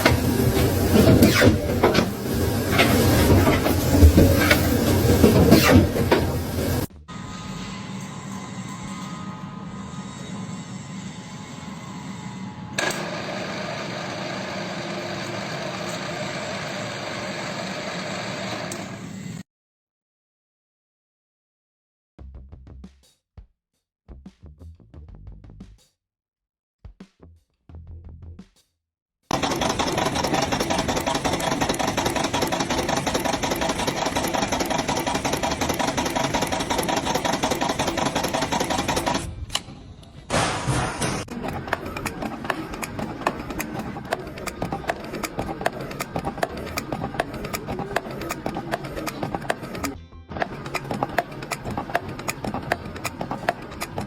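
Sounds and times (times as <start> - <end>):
machine engine running: 0.0 - 8.6, 12.8 - 19.4, 29.3 - 39.4, 40.3 - 54.0.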